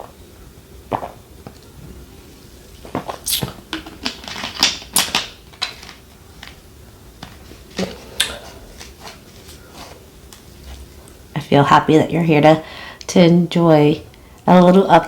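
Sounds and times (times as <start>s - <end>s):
eating clicks and smacks: 4.6s - 5.3s.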